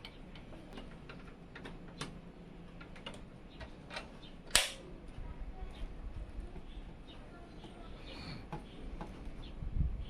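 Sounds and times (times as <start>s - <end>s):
loud sharp snap: 4.5s - 4.8s.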